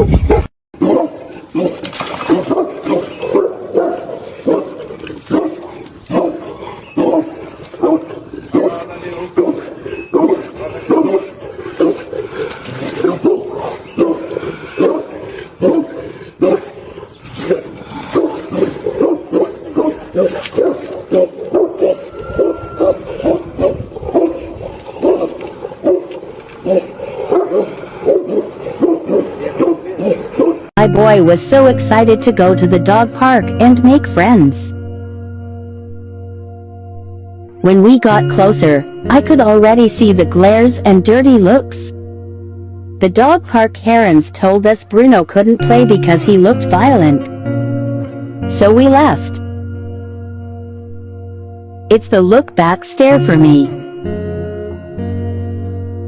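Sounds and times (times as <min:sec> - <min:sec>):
dog barking: 0:00.0 - 0:12.3, 0:12.9 - 0:16.7, 0:17.4 - 0:30.7.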